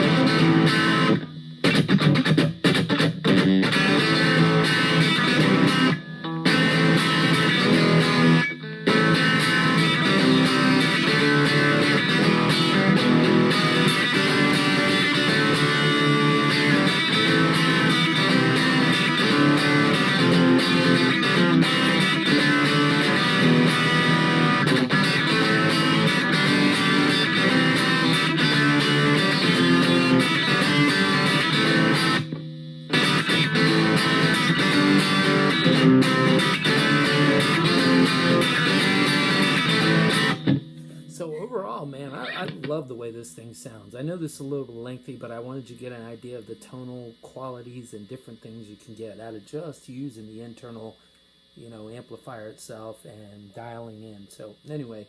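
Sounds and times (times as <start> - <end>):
distorted electric guitar riffing: 0.0 - 55.0.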